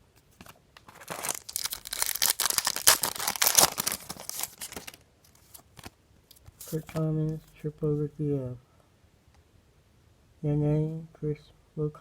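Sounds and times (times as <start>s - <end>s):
wrapper tearing and crinkling: 0.8s - 5.9s.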